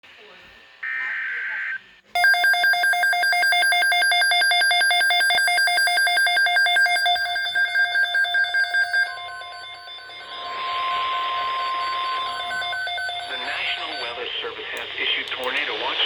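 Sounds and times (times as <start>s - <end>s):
two-tone electronic alarm: 2.2s - 14.5s
single steady tone: 5.2s - 14.4s.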